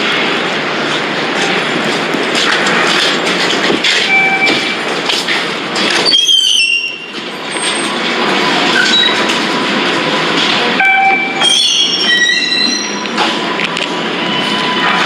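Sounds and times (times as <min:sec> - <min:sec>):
rumble of train cars: 0:00.0 - 0:15.0
train wheels squealing: 0:06.0 - 0:08.0, 0:08.7 - 0:09.2, 0:10.9 - 0:13.2, 0:14.1 - 0:14.8.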